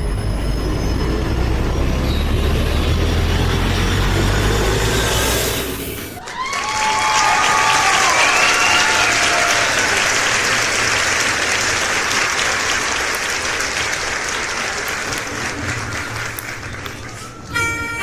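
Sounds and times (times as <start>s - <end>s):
crowd applauding and cheering: 5.4s - 18.0s.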